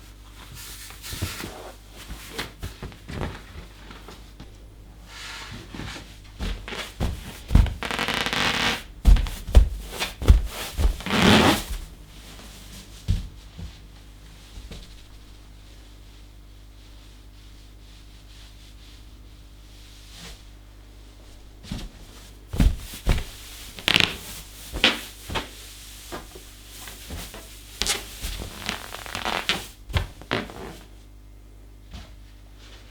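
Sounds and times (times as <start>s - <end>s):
balloons stomped thumps: 6.3s - 12.0s, 21.8s - 26.4s
dull thumps on balloon: 6.4s - 7.8s, 8.8s - 11.1s
rubbery balloon squeaks: 7.6s - 9.3s, 11.0s - 11.7s, 23.8s - 24.2s.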